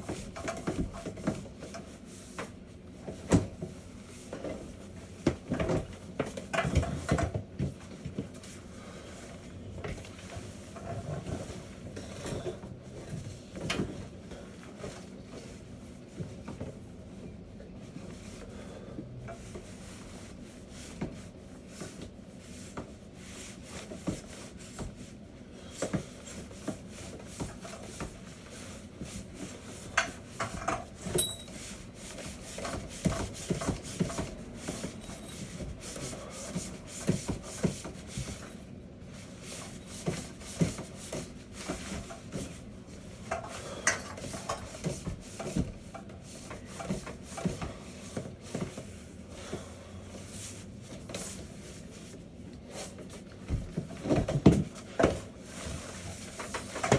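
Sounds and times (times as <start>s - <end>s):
steady background hum: 0.0s - 56.9s
brush scraping inside vent duct: 17.1s - 56.9s.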